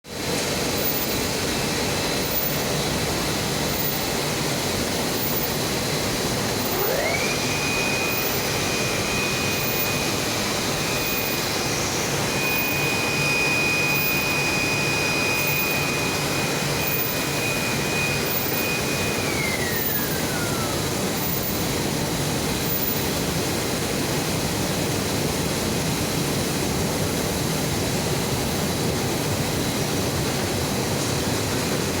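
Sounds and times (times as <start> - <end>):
motor whine: 0.6 - 23.4
machinery rushing noise: 3.6 - 22.3.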